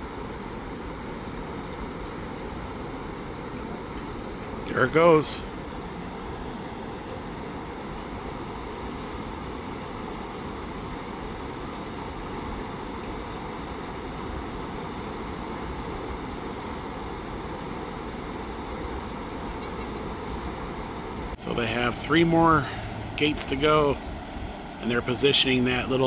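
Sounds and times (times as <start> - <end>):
roar of rushing water: 21.4 - 26.0.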